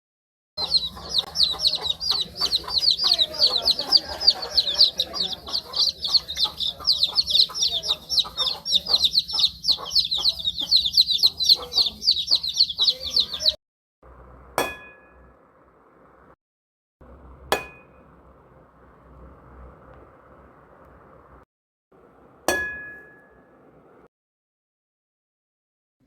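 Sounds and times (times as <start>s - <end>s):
chicks peeping: 0.6s - 13.6s.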